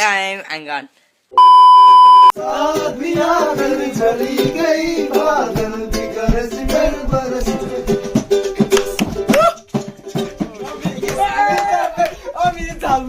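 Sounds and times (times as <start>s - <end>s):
person singing: 2.4s - 13.0s
plucked strings: 2.7s - 11.6s.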